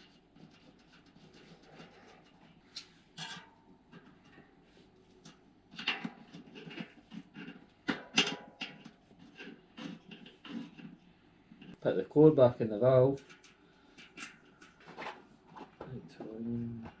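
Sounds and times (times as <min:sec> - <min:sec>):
hands handling bike wheel parts: 0:13.2 - 0:17.0.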